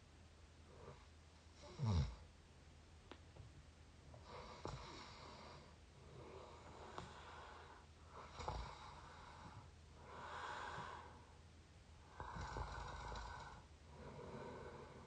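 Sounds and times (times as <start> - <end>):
person snoring: 12.1 - 15.0.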